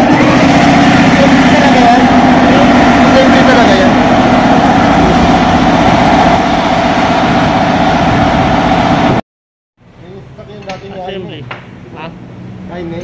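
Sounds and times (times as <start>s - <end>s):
loud engine running: 0.0s - 9.2s
low hum: 0.0s - 9.2s.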